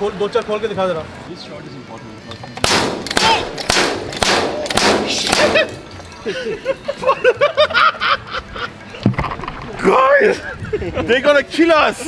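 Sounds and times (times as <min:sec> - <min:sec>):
voices: 0:00.0 - 0:07.4.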